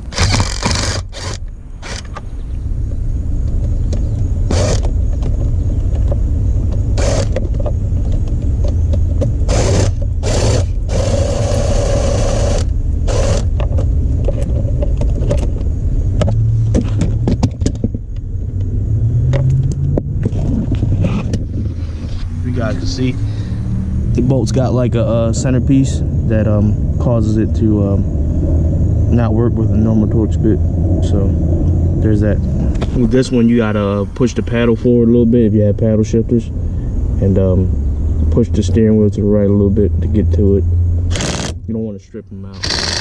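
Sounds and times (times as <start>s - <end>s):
tool grinding: 0.0s - 2.2s, 4.5s - 4.9s, 7.0s - 7.5s, 9.4s - 13.6s, 41.1s - 41.6s, 42.5s - 43.0s
steady low rumble: 0.0s - 42.7s.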